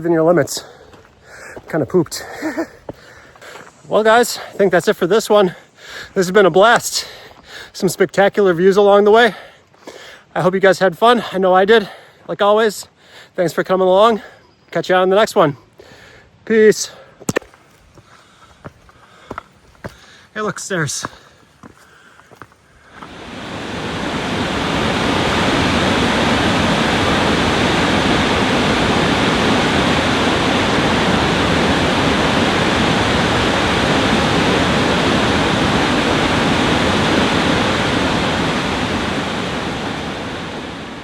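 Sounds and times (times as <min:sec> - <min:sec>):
waterfall rushing: 0:23.0 - 0:41.0.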